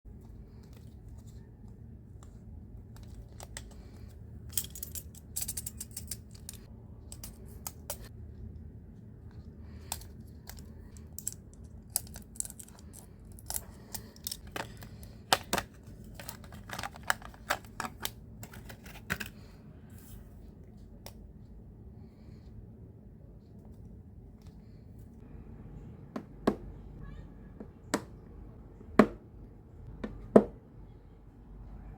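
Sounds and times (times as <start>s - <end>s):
low steady hum: 0.1s - 31.9s
packaging clicks and crinkles: 9.9s - 19.5s.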